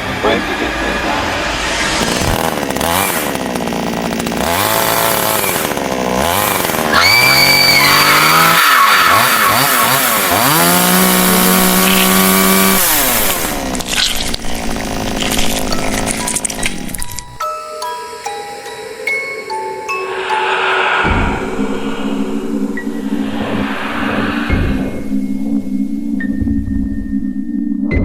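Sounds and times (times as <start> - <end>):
chainsaw engine revving: 2.0 - 17.0.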